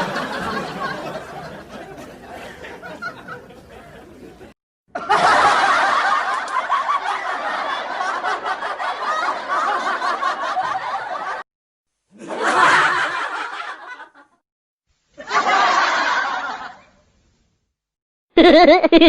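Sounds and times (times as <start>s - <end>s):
snickering laughter: 18.4s - 19.0s.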